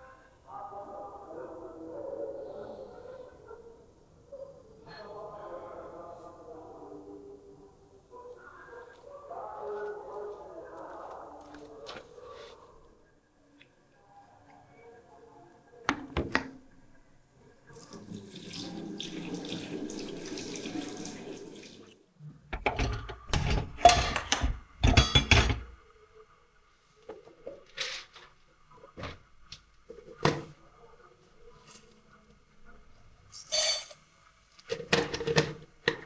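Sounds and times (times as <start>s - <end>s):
tap water running into sink: 17.8s - 21.9s.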